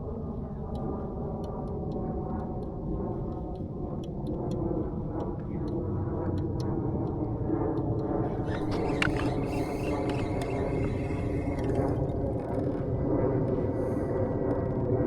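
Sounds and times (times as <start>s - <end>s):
faint clicks: 0.6s - 15.0s
boat motor running: 8.4s - 13.0s.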